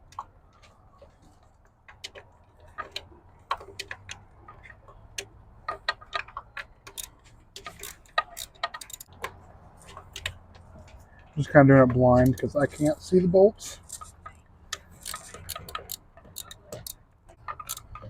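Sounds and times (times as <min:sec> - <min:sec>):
hand tools clicking on bolts: 0:02.0 - 0:09.3, 0:13.7 - 0:18.0.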